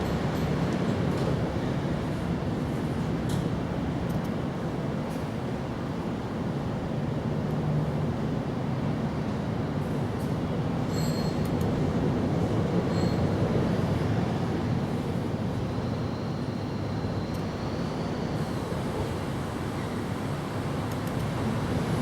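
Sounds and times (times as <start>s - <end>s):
faint high ticks: 20.9s - 21.3s.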